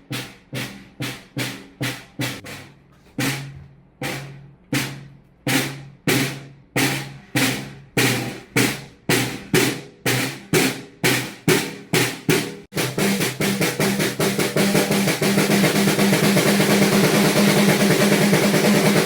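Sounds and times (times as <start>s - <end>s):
drum strokes speeding into a roll: 0.0s - 19.0s.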